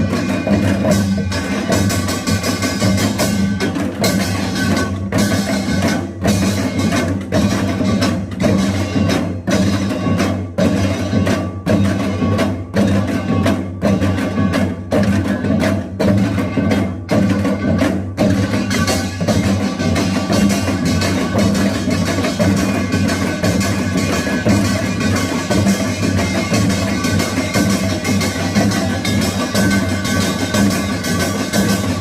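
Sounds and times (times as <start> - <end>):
drum strokes: 0.0 - 32.0
metal gongs ringing: 16.2 - 32.0.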